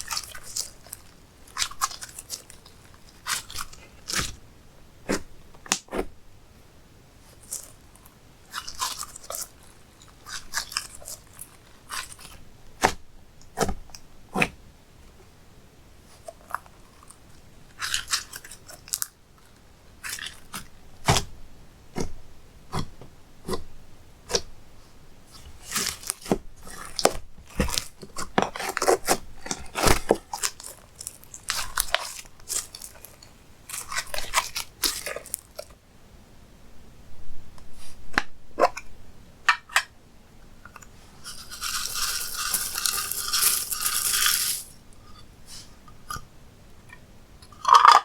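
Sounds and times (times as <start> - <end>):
slime crackling and popping: 25.6 - 35.6, 41.3 - 44.7.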